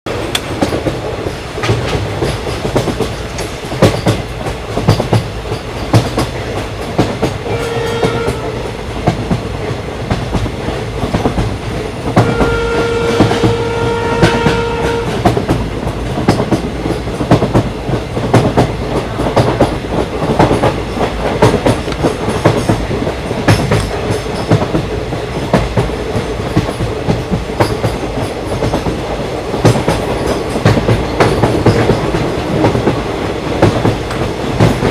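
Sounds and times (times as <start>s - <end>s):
train wheels clickety-clack: 0.1s - 34.9s
train horn: 7.4s - 8.7s, 12.2s - 15.3s.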